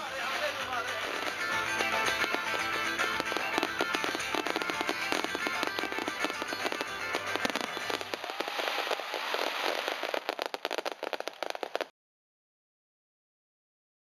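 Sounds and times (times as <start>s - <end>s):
music playing: 0.0s - 8.7s
fireworks crackling and popping: 0.0s - 11.9s.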